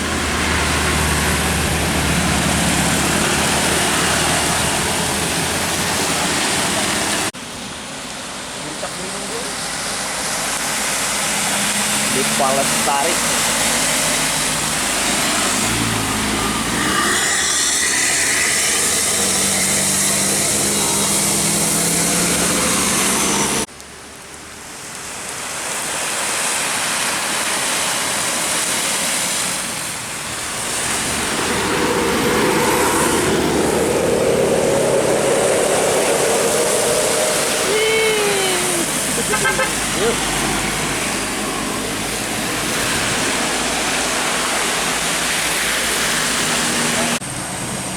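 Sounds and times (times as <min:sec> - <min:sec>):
bus engine running: 0:00.0 - 0:17.0, 0:29.9 - 0:47.9
vehicle approaching: 0:00.0 - 0:23.7, 0:24.9 - 0:47.9
road traffic: 0:00.0 - 0:47.9.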